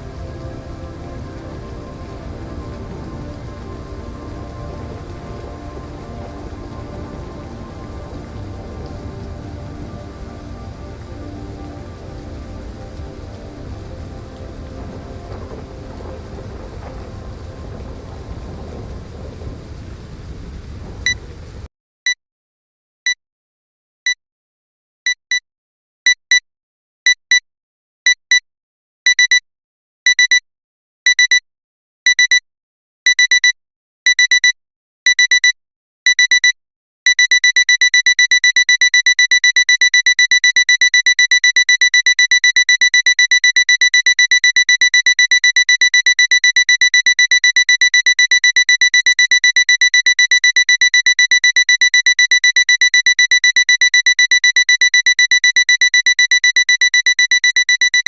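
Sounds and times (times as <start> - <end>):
alarm clock beeping: 37.1 - 58.0.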